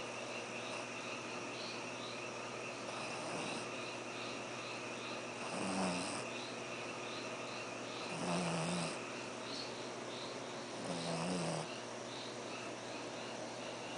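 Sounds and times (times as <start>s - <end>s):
dog snoring: 2.8s - 4.0s, 5.4s - 6.5s, 8.0s - 9.1s, 10.7s - 11.8s.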